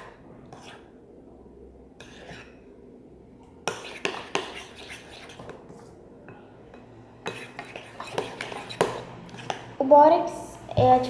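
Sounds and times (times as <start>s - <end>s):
spoon stirring slime in bowl: 0.0s - 0.9s, 2.0s - 2.7s, 3.6s - 9.8s.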